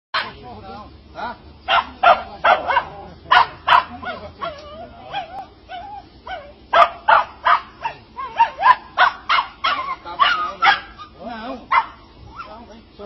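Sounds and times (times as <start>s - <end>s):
dog barking: 0.2s - 0.4s, 1.7s - 11.1s, 11.7s - 12.5s
dog whining: 3.9s - 6.8s, 7.8s - 11.2s.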